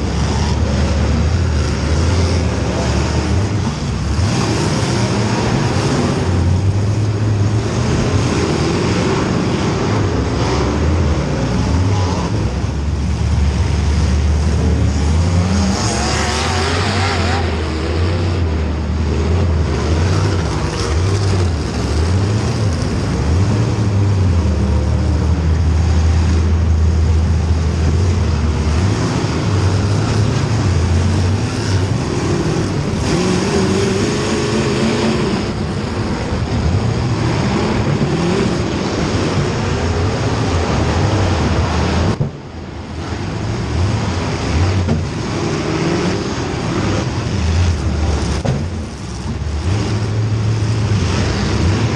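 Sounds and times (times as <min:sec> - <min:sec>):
race car engines accelerating: 0:00.0 - 0:51.9.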